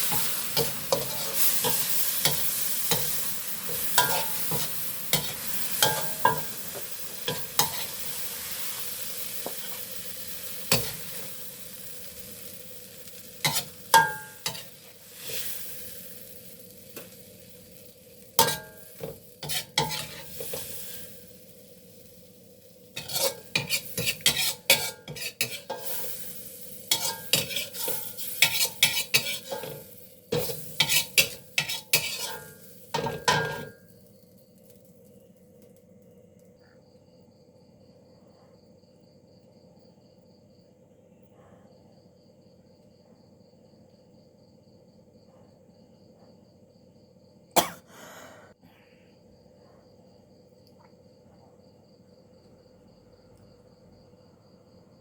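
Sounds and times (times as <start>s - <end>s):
spatula scraping and clacking: 0.0s - 8.0s, 10.7s - 11.1s, 13.4s - 15.4s, 18.4s - 20.7s, 23.0s - 26.2s, 26.9s - 33.7s
stir-fry sizzling in a pan: 0.0s - 35.2s.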